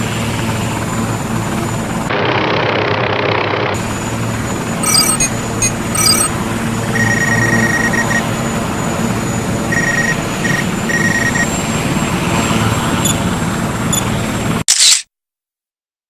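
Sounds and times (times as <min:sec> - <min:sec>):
drone propellers humming: 0:00.0 - 0:14.6
short high beeps: 0:04.8 - 0:06.3, 0:06.9 - 0:08.2, 0:09.7 - 0:11.5.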